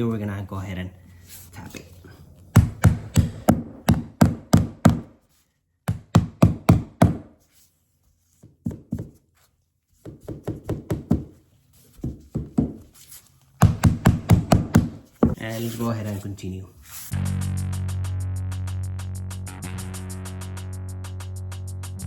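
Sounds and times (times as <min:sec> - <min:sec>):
mallet tapping vinyl floor plank: 0:02.6 - 0:05.2, 0:05.9 - 0:07.3, 0:08.4 - 0:09.2, 0:10.0 - 0:11.4, 0:12.0 - 0:12.9, 0:13.6 - 0:15.4.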